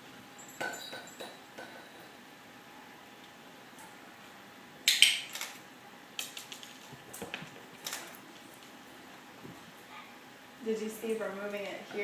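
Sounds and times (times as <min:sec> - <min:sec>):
metal bells jingling: 0:00.4 - 0:01.4.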